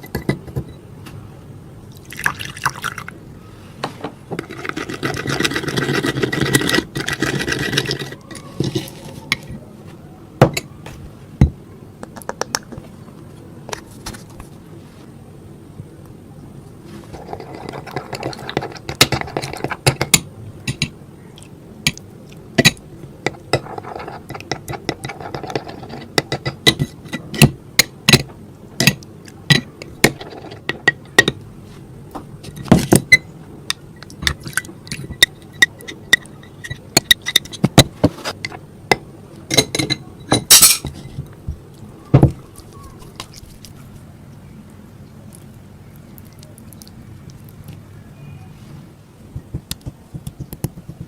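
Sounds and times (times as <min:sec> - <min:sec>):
spoon scraping mixing bowl: 0:04.4 - 0:09.6, 0:17.0 - 0:20.9, 0:23.3 - 0:27.5, 0:29.6 - 0:31.1
spoon clattering: 0:39.5 - 0:41.0.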